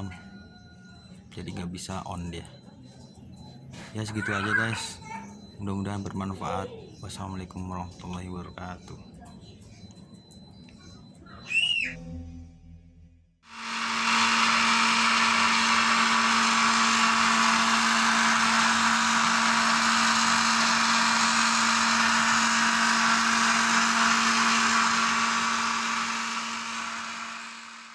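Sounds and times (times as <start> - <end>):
blender motor whirring: 13.5 - 27.9.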